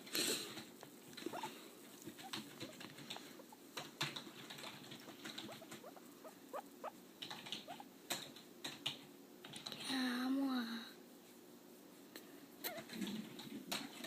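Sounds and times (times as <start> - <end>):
scratching: 0.4 - 8.3
small pet squeaking: 1.2 - 7.9, 12.6 - 13.1.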